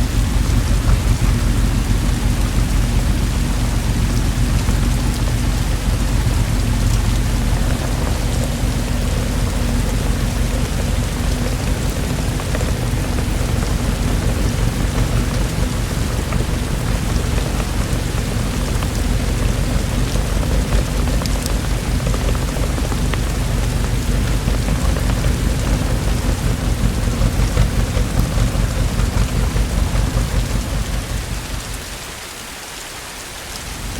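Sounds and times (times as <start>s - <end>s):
low rumble: 0.0s - 32.3s
steady rain falling: 0.0s - 33.9s.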